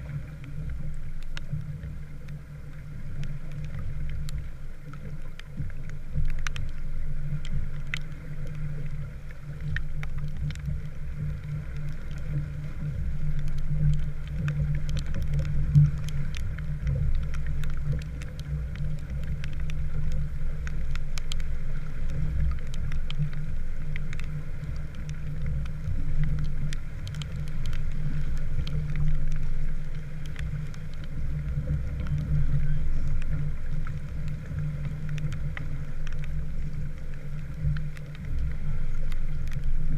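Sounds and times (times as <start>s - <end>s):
raindrops ticking on boat: 0.0s - 39.9s
wind and water against hull: 0.0s - 39.9s.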